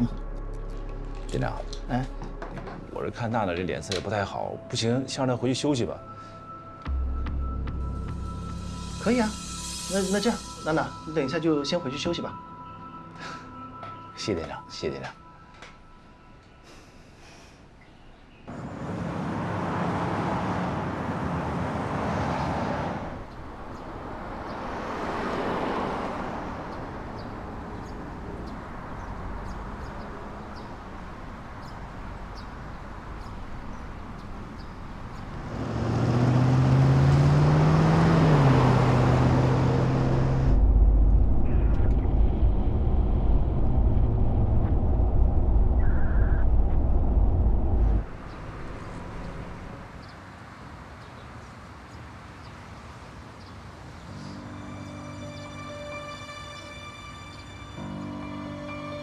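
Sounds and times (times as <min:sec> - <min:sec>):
engine rising and falling in pitch: 0:18.5 - 0:30.8, 0:34.8 - 0:49.8
cars passing: 0:18.5 - 0:59.0
low engine rumble: 0:38.4 - 0:50.0.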